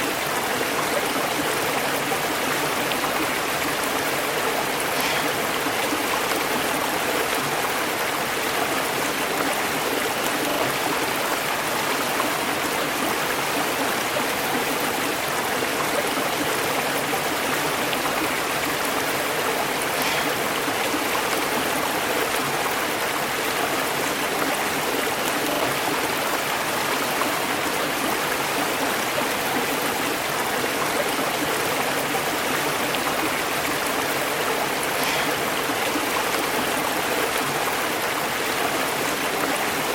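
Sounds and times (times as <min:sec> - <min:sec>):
river water flowing over rocks: 0:00.0 - 0:39.9.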